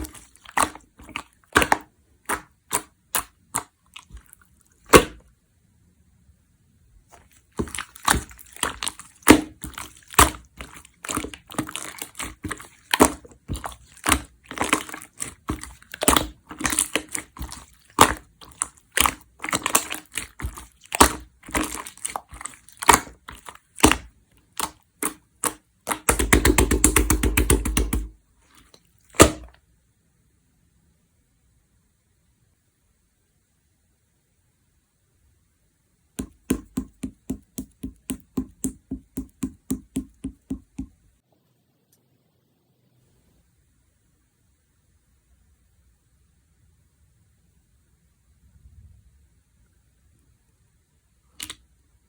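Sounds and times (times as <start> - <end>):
slime squeezed and stretched: 0.0 - 5.2, 7.2 - 27.0
slime popping and clicking: 7.6 - 28.1.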